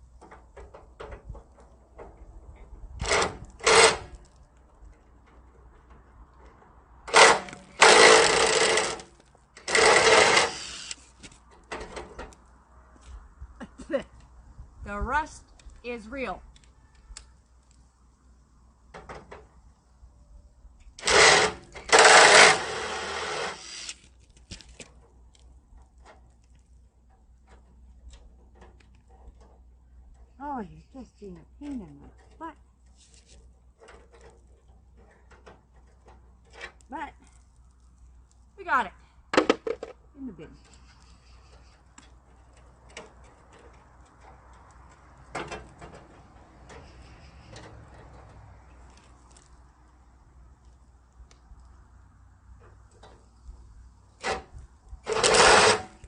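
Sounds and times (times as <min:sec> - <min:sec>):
power tool on bolt: 0:03.0 - 0:04.1, 0:07.1 - 0:11.1, 0:21.0 - 0:24.1, 0:55.0 - 0:56.0.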